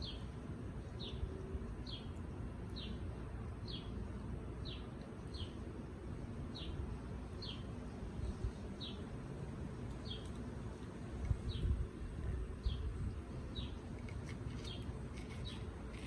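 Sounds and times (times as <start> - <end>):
bird chirping: 0.0 - 0.3, 1.0 - 3.0, 3.6 - 4.0, 4.6 - 5.6, 7.4 - 9.1, 10.0 - 10.4, 12.6 - 16.0.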